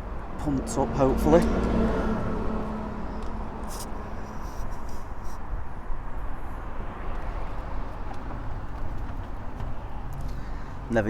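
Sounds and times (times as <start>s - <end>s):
outdoor background rumble: 0.0s - 11.0s.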